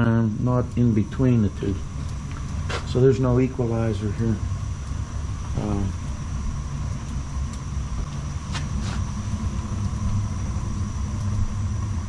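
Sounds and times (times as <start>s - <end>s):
boiler burner rumble: 0.0s - 12.0s
faint high whine: 0.0s - 12.0s.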